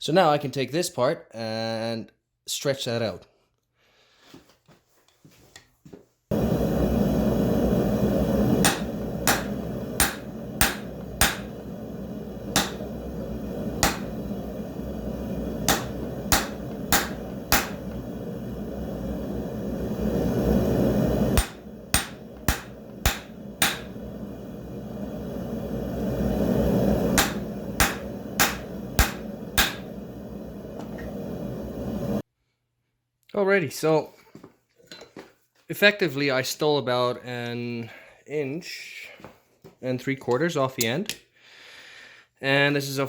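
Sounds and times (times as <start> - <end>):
hammer striking metal on anvil: 8.6 - 11.7, 12.5 - 13.0, 13.8 - 14.4, 15.6 - 18.0, 21.4 - 24.1, 27.1 - 30.0.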